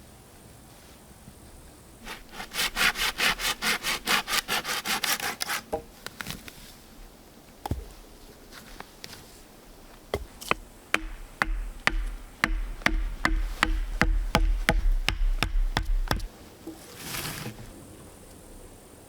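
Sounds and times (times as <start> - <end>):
scraping rustle: 0.7 - 6.9, 16.0 - 18.1
hand tool striking wood: 2.1 - 5.9, 10.1 - 16.3.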